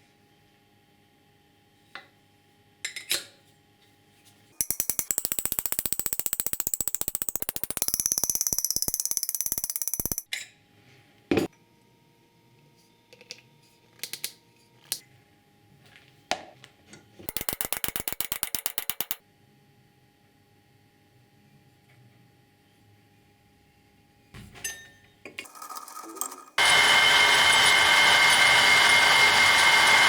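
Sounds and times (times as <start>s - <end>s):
mechanical ratcheting clicks: 4.6s - 10.3s, 17.3s - 19.2s.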